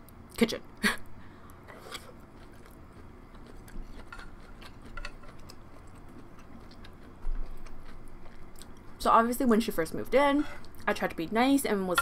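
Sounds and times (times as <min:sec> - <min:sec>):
person chewing: 0:01.7 - 0:09.0.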